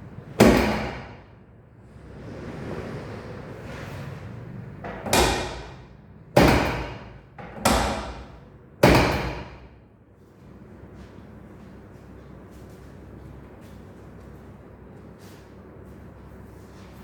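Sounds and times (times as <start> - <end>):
loud knocks: 0.4 - 1.2, 4.8 - 5.8, 6.4 - 9.7.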